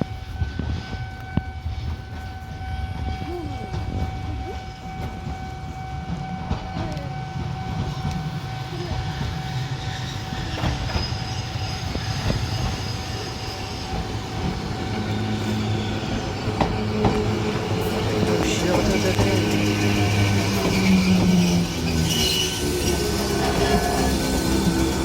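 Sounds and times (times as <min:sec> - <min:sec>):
crossing warning bell ringing: 0:00.0 - 0:25.0
tram rumble: 0:00.0 - 0:25.0
wheels clicking over rail joints: 0:13.4 - 0:25.0.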